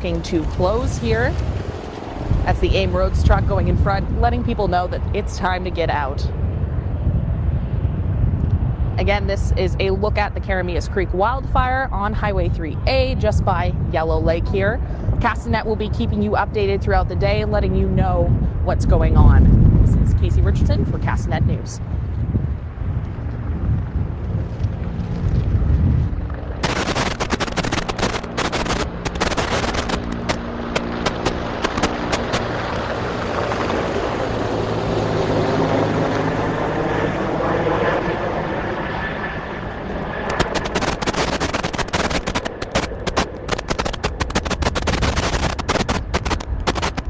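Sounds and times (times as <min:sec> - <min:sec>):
engine humming: 0:26.1 - 0:47.0
dense irregular crackle: 0:26.6 - 0:32.5, 0:40.2 - 0:47.0.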